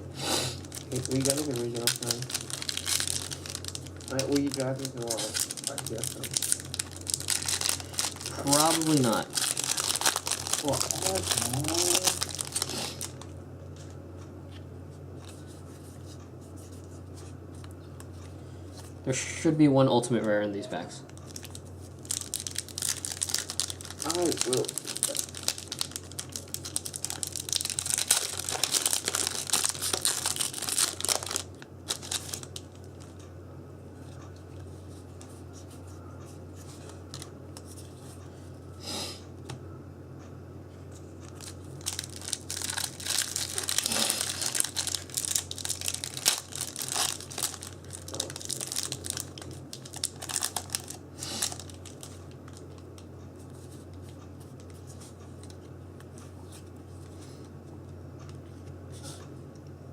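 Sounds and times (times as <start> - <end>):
foil wrappers tearing and crinkling: 0.6 - 13.3, 21.2 - 33.1, 41.2 - 52.9.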